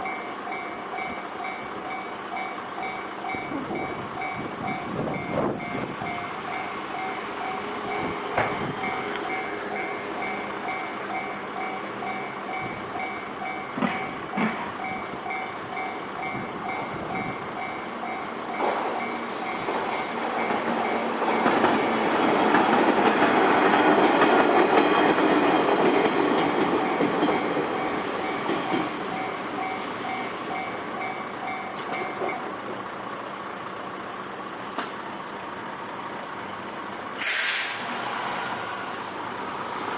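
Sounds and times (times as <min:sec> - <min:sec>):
level-crossing alarm ringing: 0:00.0 - 0:22.3, 0:25.1 - 0:32.5
train rumbling past: 0:00.0 - 0:39.9.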